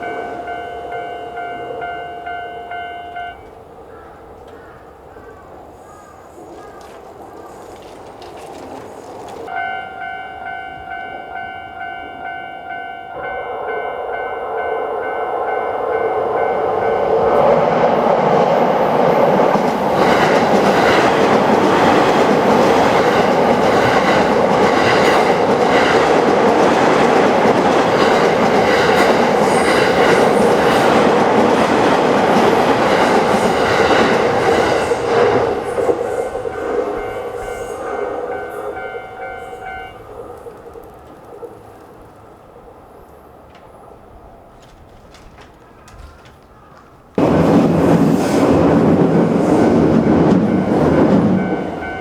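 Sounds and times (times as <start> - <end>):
level crossing warning bell: 0.0 - 3.7, 9.5 - 40.4, 48.9 - 52.0
train wheels clattering: 6.5 - 12.9, 15.4 - 42.3, 44.5 - 52.0.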